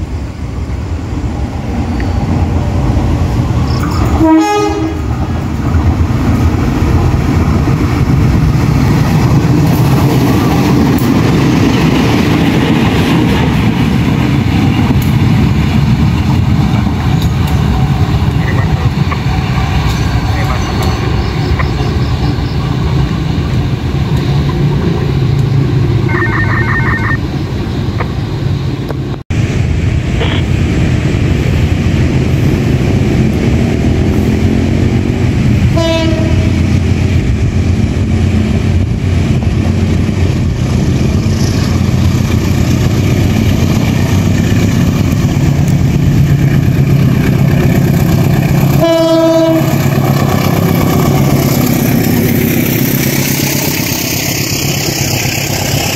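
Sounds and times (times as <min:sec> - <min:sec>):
train rumbling past: 0:00.0 - 0:55.9
train horn blast: 0:04.1 - 0:05.1, 0:35.7 - 0:36.8, 0:48.8 - 0:49.8.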